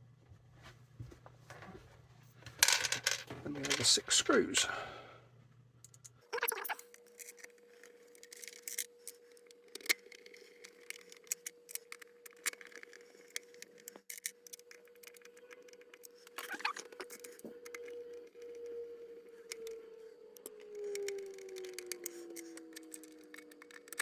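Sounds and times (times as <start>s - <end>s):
faint steady tone: 6.9s - 24.0s.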